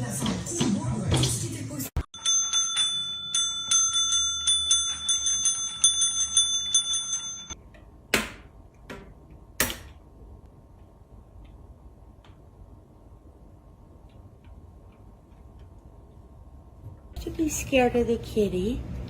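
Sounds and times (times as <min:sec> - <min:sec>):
small metal bell ringing: 0:02.2 - 0:07.6.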